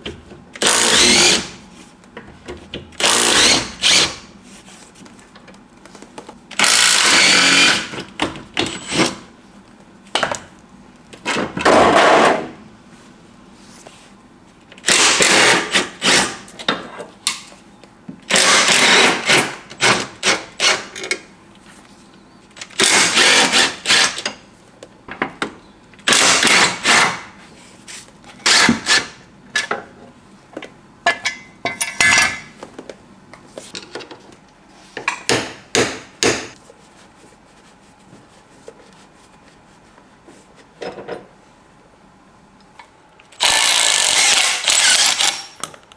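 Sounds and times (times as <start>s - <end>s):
power tool bursts: 0.6s - 1.5s, 3.0s - 4.2s, 6.6s - 7.9s, 14.9s - 16.4s, 18.3s - 20.0s, 22.8s - 24.2s, 26.1s - 27.1s, 43.4s - 45.6s.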